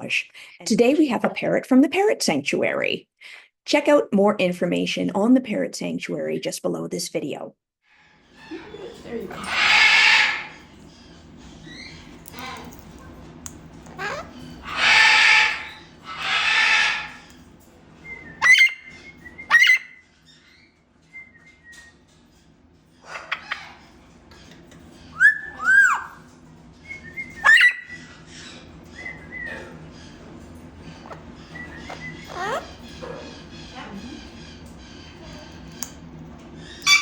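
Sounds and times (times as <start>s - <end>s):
parrot squawking: 8.3s - 10.8s, 11.6s - 12.8s, 13.9s - 17.3s, 18.4s - 20.6s, 23.0s - 24.0s, 25.1s - 26.3s, 27.2s - 35.8s, 36.6s - 37.0s
parrot whistling: 9.3s - 10.7s, 14.0s - 17.2s, 18.0s - 20.0s, 25.1s - 26.2s, 26.8s - 28.3s, 28.9s - 29.7s, 31.1s - 32.8s.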